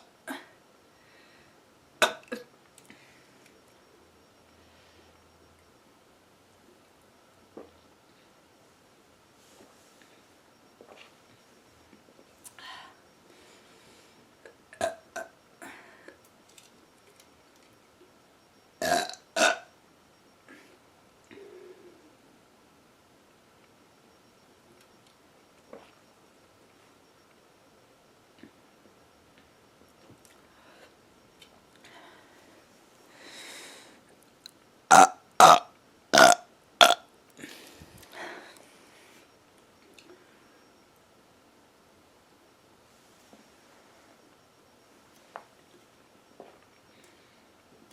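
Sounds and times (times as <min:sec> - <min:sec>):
woman burping: 0:00.0 - 0:00.6, 0:02.0 - 0:02.5, 0:14.7 - 0:15.8, 0:18.8 - 0:19.7, 0:34.9 - 0:37.0.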